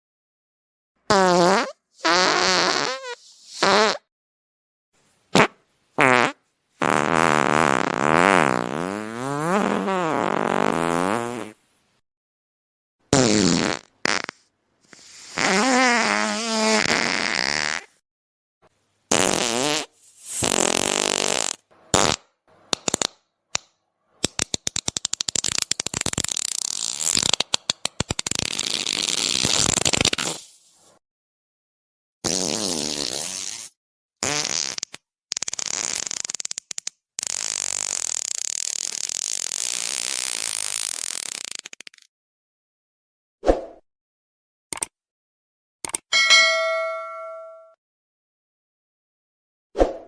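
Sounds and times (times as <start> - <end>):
fart sound effects: 1.1 - 4.1, 5.4 - 11.6, 13.1 - 14.5, 15.4 - 17.9, 19.1 - 22.2, 28.2 - 30.4, 32.2 - 36.5, 37.2 - 42.0.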